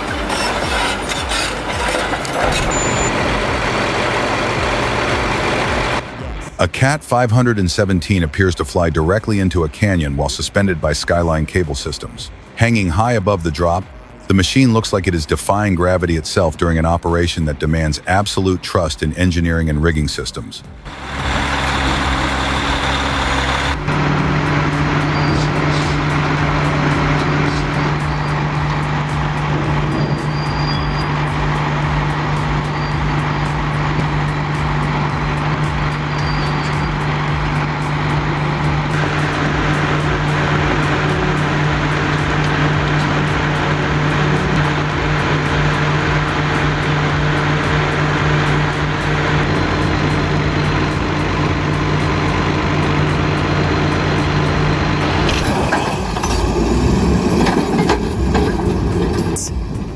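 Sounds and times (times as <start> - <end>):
metal clanking and rattling: 0.0 - 6.0, 55.0 - 59.4
heavy machine engine running: 0.0 - 14.3, 20.6 - 59.9
background music: 0.0 - 59.9.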